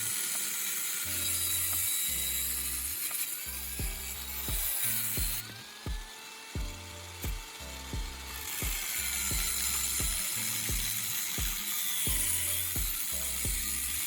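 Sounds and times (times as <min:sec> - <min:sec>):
held bass notes: 0:03.5 - 0:05.6, 0:06.6 - 0:11.0
low kick drum: 0:03.8 - 0:13.7.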